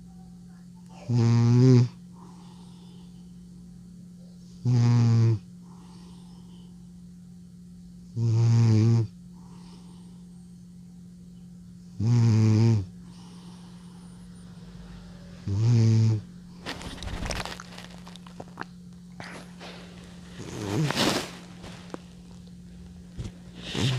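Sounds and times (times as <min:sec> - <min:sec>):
cat snoring: 0:01.0 - 0:02.6, 0:04.6 - 0:06.3, 0:08.2 - 0:10.1, 0:12.0 - 0:14.2, 0:15.4 - 0:17.5, 0:19.2 - 0:21.3, 0:23.2 - 0:23.9
scratchy breathing: 0:05.6 - 0:06.8, 0:13.0 - 0:14.4, 0:16.6 - 0:23.9.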